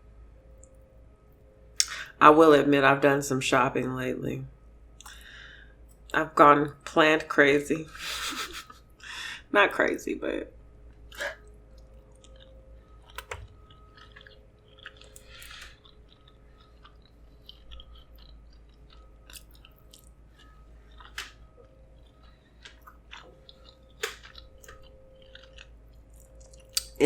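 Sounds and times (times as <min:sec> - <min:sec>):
chewing and biting food: 0:10.8 - 0:27.0.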